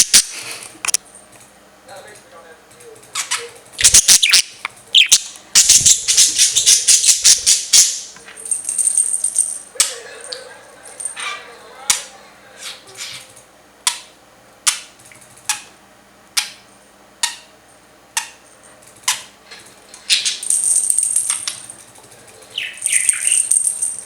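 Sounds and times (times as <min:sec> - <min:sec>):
budgie chirps: 0:03.2 - 0:08.1, 0:22.5 - 0:23.6.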